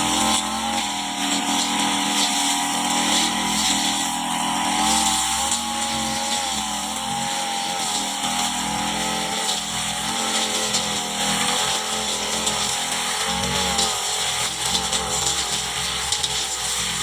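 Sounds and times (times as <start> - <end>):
brush cutter cutting grass: 0.0 - 17.0.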